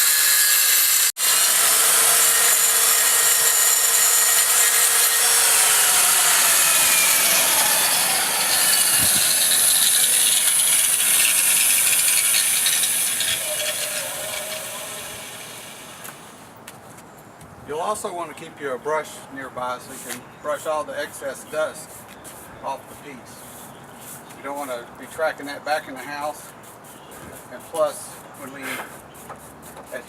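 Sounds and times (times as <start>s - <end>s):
circular saw cutting concrete: 0.0s - 16.4s.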